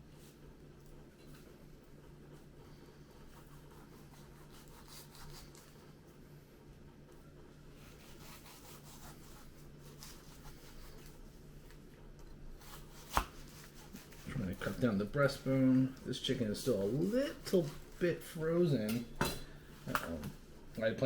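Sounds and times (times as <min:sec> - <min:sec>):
steady low hum: 0:00.0 - 0:21.0
knife scraping raw chicken: 0:03.2 - 0:05.9, 0:07.7 - 0:11.3, 0:12.4 - 0:15.3.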